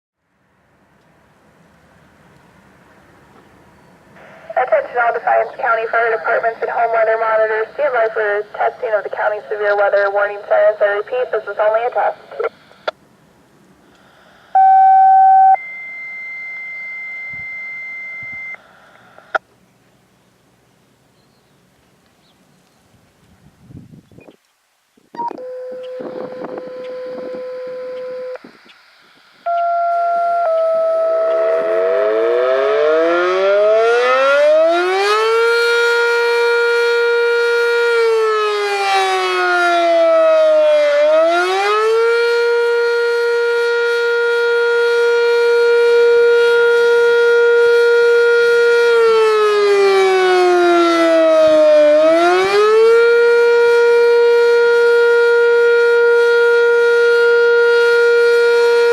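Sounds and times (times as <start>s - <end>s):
alert tones over radio: 4.2s - 12.9s, 29.4s - 32.2s.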